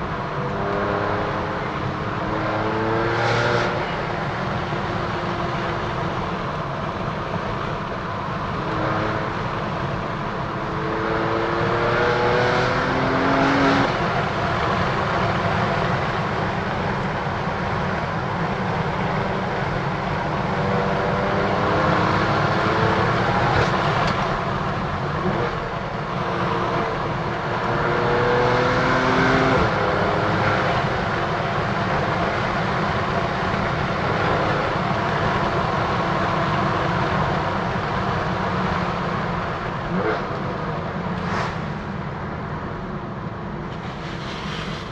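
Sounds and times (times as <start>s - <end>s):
road and tyre noise: 0.0s - 44.9s
car engine revving through gears: 2.2s - 4.0s, 10.6s - 14.8s, 20.4s - 24.3s, 25.0s - 31.9s.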